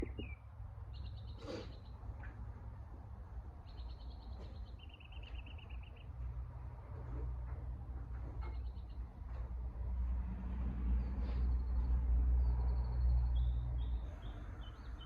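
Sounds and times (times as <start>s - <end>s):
low steady rumble: 0.0s - 0.6s
songbirds chirping and trilling: 0.0s - 9.8s, 10.6s - 15.0s.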